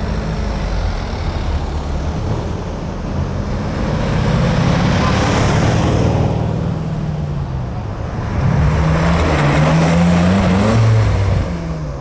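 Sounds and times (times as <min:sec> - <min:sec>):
sports car engine revving: 0:07.4 - 0:12.0.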